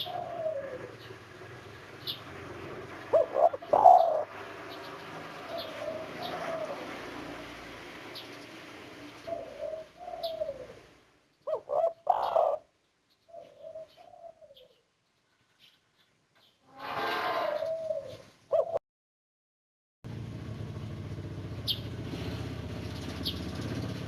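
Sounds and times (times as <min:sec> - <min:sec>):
dove cooing: 0:00.0 - 0:01.2, 0:03.0 - 0:04.4, 0:05.4 - 0:07.0, 0:09.2 - 0:12.7, 0:13.3 - 0:14.8, 0:17.4 - 0:18.8.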